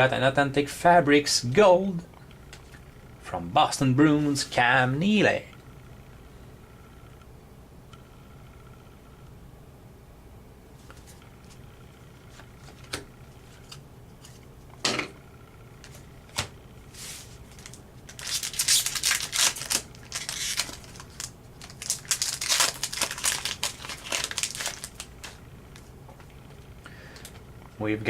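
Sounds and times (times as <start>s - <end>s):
card pack wrapper crinkling: 17.5s - 25.4s.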